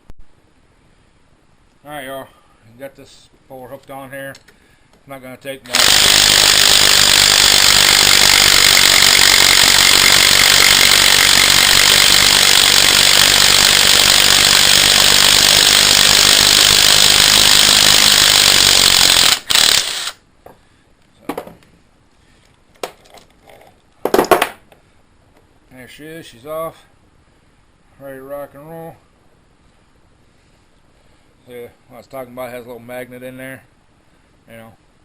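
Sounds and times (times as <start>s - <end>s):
impact wrench hammering: 5.7s - 20.0s.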